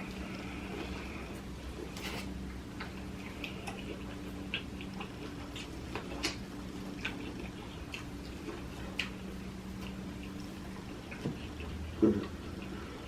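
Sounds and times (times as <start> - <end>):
steady low hum: 0.0 - 13.0
wet chewing and lip smacking: 0.0 - 13.0.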